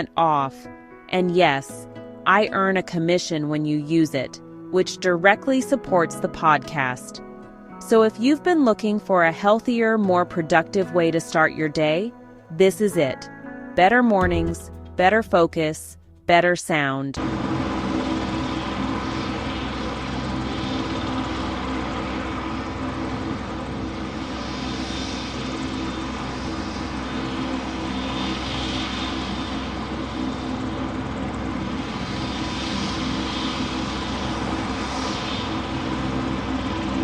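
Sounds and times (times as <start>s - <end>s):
engine drone: 17.2s - 37.0s.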